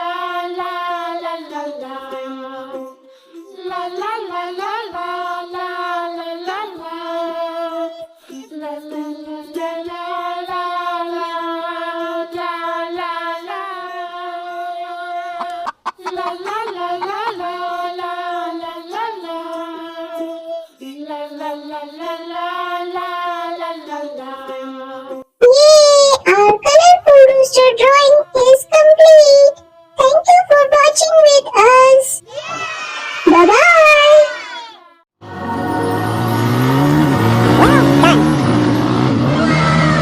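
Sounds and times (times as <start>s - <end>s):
child-like voice singing: 0.0s - 32.7s, 33.3s - 34.8s, 37.5s - 38.3s.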